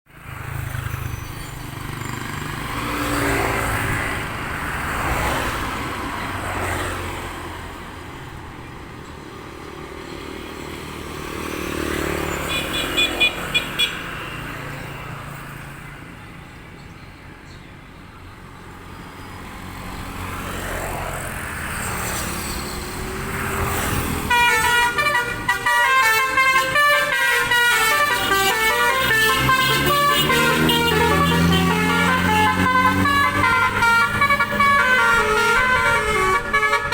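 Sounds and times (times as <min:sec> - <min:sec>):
road traffic passing: 0:00.1 - 0:36.9
bus multi-tone musical horn: 0:12.4 - 0:14.2, 0:23.8 - 0:36.9.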